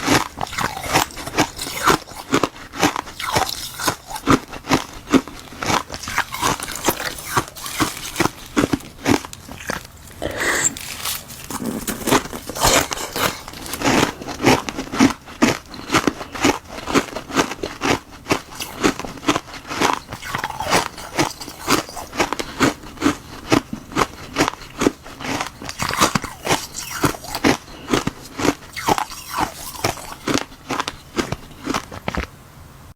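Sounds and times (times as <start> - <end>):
crunching ice: 0.0 - 32.3.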